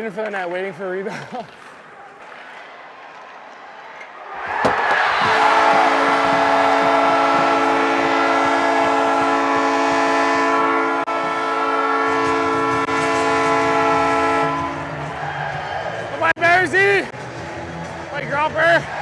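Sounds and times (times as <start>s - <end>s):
goal horn chord: 5.2s - 15.1s.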